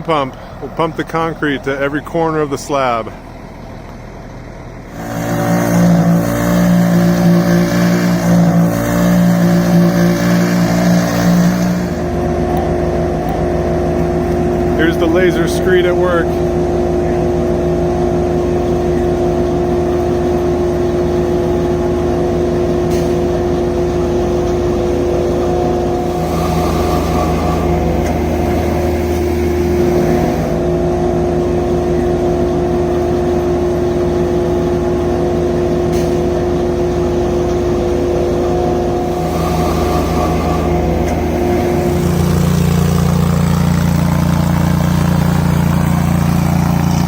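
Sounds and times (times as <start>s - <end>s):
machinery engines running: 0.0s - 47.0s
hiss: 26.0s - 30.6s, 39.0s - 42.9s.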